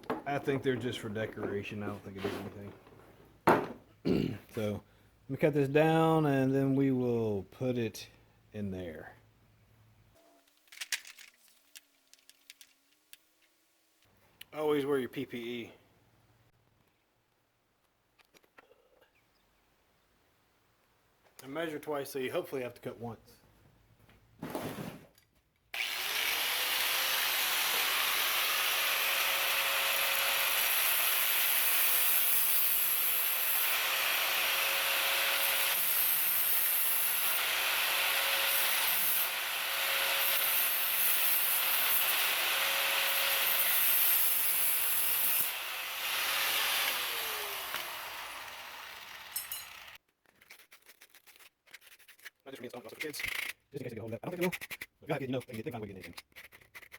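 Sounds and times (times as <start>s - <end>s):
power cutting tool running: 25.8s - 30.8s, 45.2s - 50.0s
cutting wheel biting into wood: 25.8s - 50.0s.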